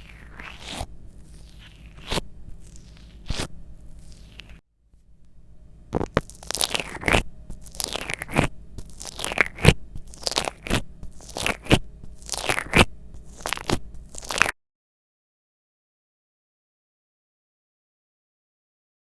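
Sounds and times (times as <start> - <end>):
slime squeezed by hand popping: 5.9 - 14.6.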